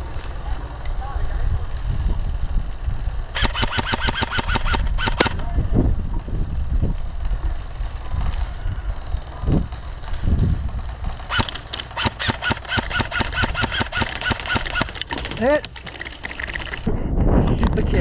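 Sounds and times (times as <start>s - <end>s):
wind buffeting microphone: 0.0s - 18.0s
airsoft gun firing bursts: 3.3s - 6.1s, 10.7s - 16.9s.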